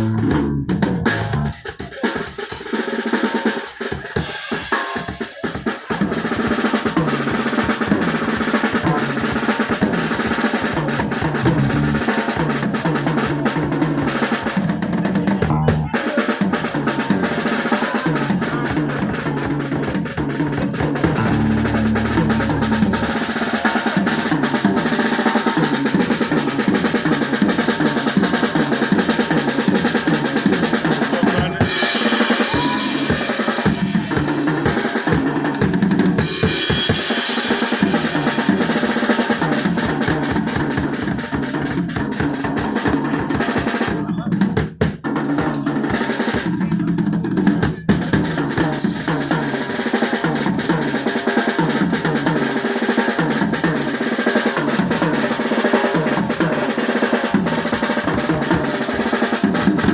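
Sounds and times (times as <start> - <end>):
bass line: 0.0 - 1.6, 11.2 - 12.2, 15.4 - 16.0, 21.0 - 24.9
live band playing: 0.0 - 5.6, 10.9 - 13.6, 18.3 - 41.8
drum kit: 0.0 - 59.9.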